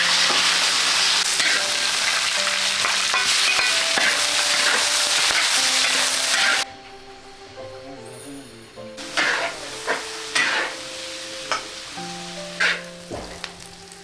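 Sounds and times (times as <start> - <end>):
food sizzling in a wok: 0.0 - 6.7, 9.0 - 14.0
spatula stirring in a wok: 2.8 - 6.6, 9.0 - 10.9, 12.5 - 13.0.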